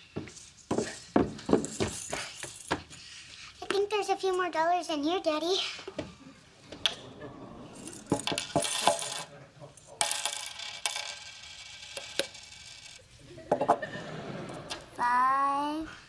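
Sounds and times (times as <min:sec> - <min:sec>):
coins clinking and rattling: 0:07.8 - 0:09.3, 0:10.0 - 0:13.0.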